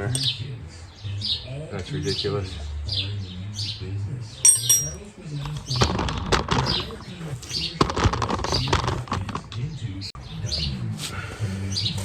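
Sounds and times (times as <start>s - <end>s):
high chirping: 0.0s - 5.8s
clicks and rustles of handling parts: 4.5s - 9.7s.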